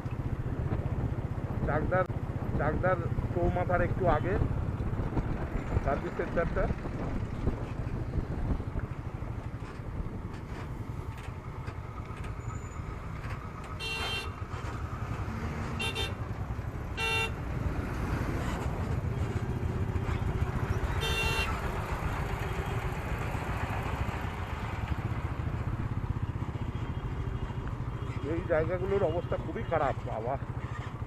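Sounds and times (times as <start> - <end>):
motorcycle riding in traffic: 0.0 - 31.0
vehicle horn honks: 13.8 - 14.4, 15.8 - 16.2, 17.0 - 17.4, 21.0 - 21.6.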